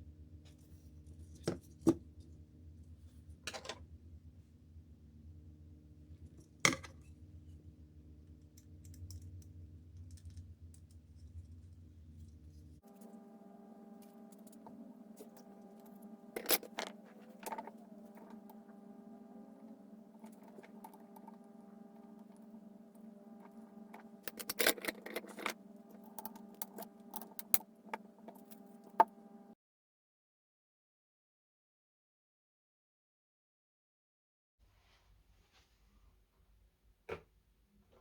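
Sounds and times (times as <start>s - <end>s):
electrical hum: 0.0s - 29.6s.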